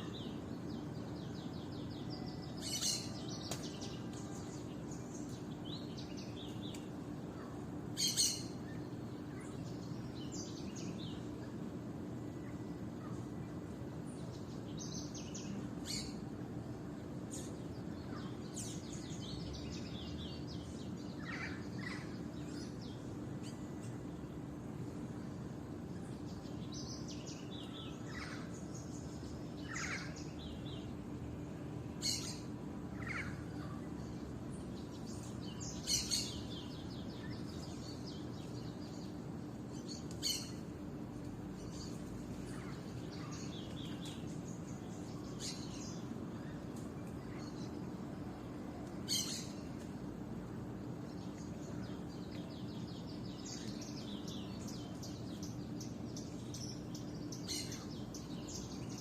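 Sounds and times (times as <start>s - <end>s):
birds chirping and whistling: 0.0s - 4.1s, 8.0s - 11.1s, 32.0s - 34.1s, 34.8s - 40.7s, 41.6s - 47.8s, 49.0s - 49.7s, 51.2s - 59.0s
faint hum: 0.0s - 59.0s.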